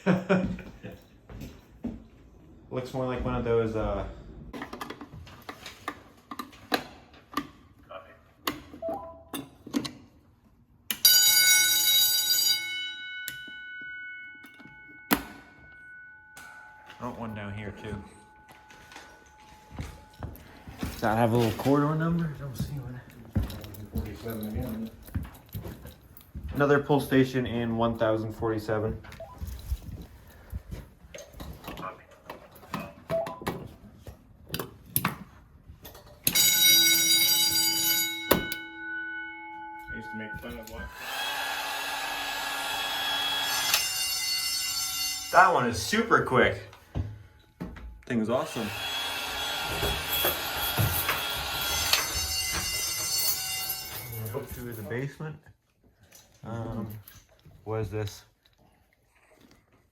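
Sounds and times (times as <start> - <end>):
fire alarm bell ringing: 10.9 - 22.6, 36.2 - 47.7, 49.6 - 54.9.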